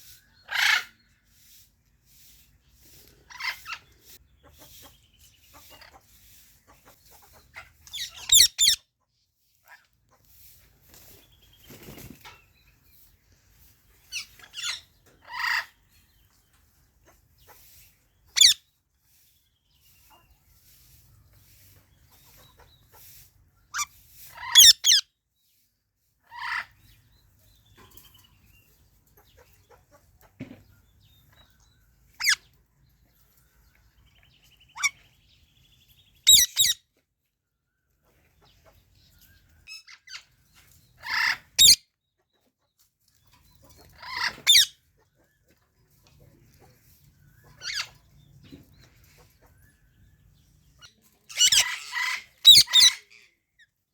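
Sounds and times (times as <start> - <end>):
parakeets giving shrill calls: 0.5 - 1.0, 7.9 - 8.8, 18.4 - 18.6, 23.8 - 25.0, 32.2 - 32.4, 36.3 - 36.8, 41.0 - 41.8, 44.0 - 44.8, 47.6 - 47.9, 51.3 - 53.3.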